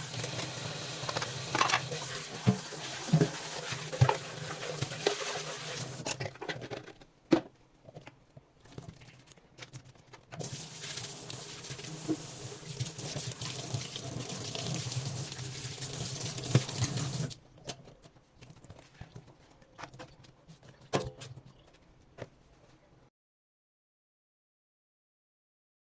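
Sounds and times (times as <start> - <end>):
tap water running into sink: 0.0 - 6.0, 10.4 - 17.4.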